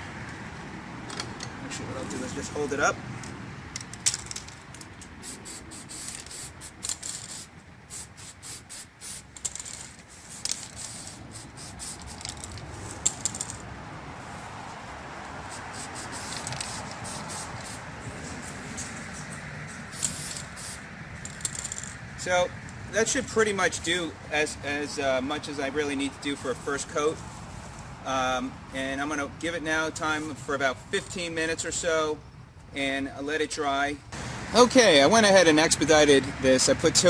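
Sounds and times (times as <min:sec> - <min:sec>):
aerosol can spraying: 0:05.1 - 0:13.2, 0:15.4 - 0:19.2, 0:19.8 - 0:21.8.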